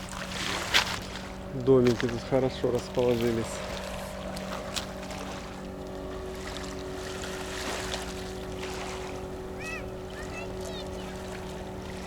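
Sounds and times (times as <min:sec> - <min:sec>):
large engine droning: 0:00.0 - 0:12.0
waves: 0:00.0 - 0:12.0
wind: 0:00.0 - 0:12.0.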